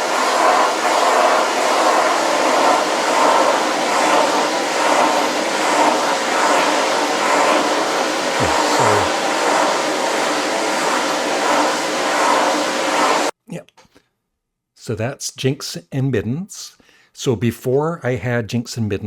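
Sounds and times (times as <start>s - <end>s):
vacuum cleaner running: 0.0s - 13.3s.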